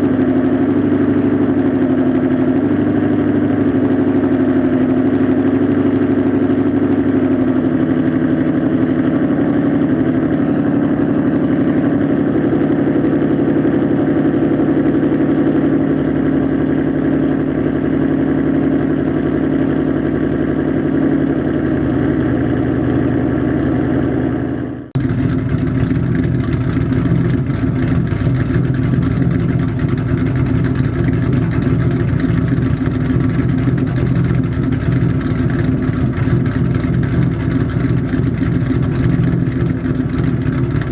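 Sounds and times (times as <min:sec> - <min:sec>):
vehicle engine idling: 0:00.0 - 0:40.9.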